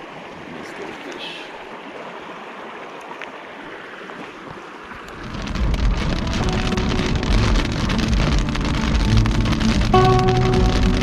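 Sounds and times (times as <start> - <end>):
river water rushing: 0.0 - 11.0
heavy rain: 5.0 - 11.0
deep low rumble: 5.2 - 11.0.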